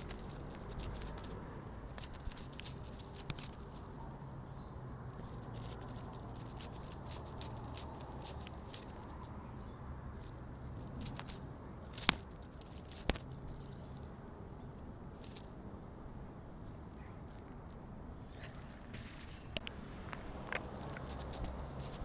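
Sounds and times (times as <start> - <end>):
fluttering wings: 0.0 - 3.9, 5.2 - 9.3, 21.0 - 22.0.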